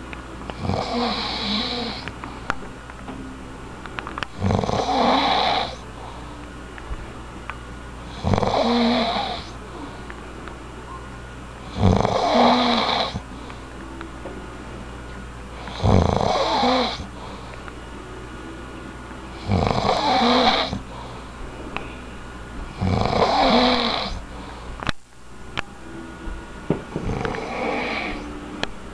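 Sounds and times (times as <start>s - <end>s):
person snoring: 0.6s - 2.1s, 4.3s - 5.8s, 8.1s - 10.0s, 11.7s - 13.2s, 15.6s - 17.4s, 19.4s - 21.2s, 22.8s - 24.5s, 27.0s - 28.4s.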